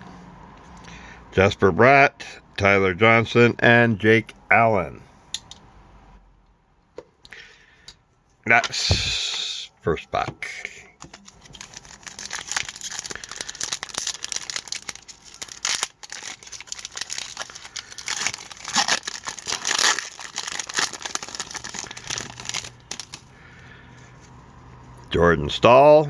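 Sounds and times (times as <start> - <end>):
wrapper being torn and crinkled: 11.0 - 23.3.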